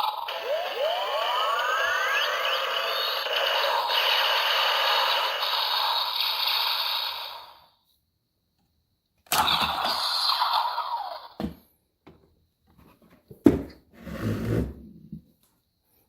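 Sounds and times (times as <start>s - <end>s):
electronic hissing from toy speaker: 0.0s - 7.7s, 9.3s - 11.4s.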